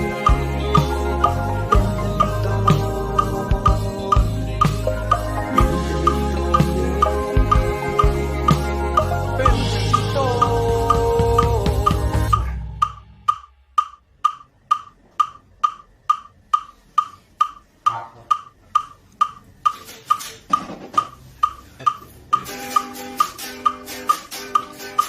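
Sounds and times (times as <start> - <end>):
sustained keyboard chords: 0.0 - 19.7
wood-block click: 0.0 - 25.0.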